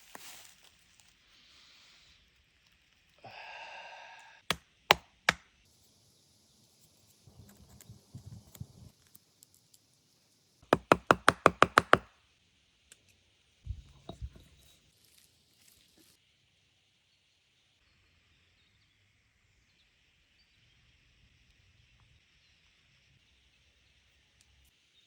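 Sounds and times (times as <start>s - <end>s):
sharp knocks: 10.8s - 12.0s.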